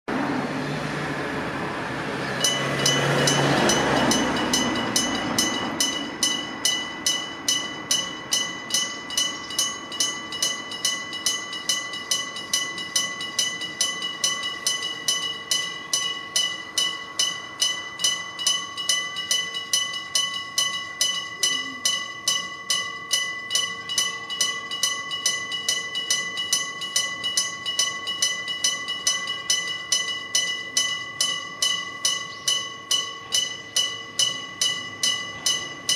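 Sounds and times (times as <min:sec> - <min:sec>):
passing vehicle rumble: 0:00.1 - 0:18.7
level crossing bell striking: 0:02.2 - 0:35.9.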